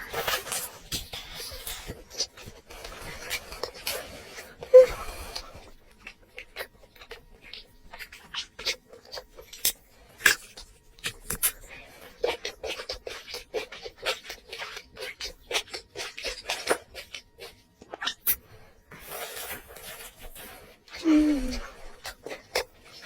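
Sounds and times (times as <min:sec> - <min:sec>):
wet chewing clicks: 0:05.3 - 0:18.5, 0:20.9 - 0:23.0.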